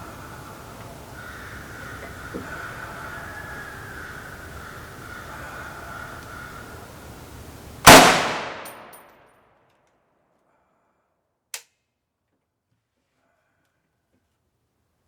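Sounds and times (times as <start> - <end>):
loud rifle shot: 7.8 - 9.1.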